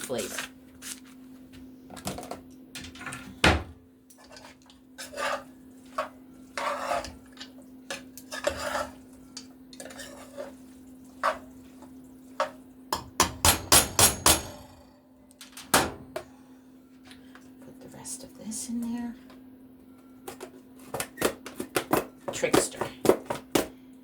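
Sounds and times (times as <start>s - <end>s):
steady low hum: 0.0s - 20.8s
spoon scraping in bowl: 4.2s - 9.1s, 9.8s - 10.6s.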